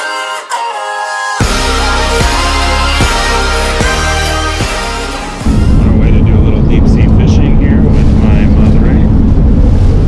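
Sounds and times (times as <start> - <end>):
music with heavy bass and beat: 1.4 - 7.8.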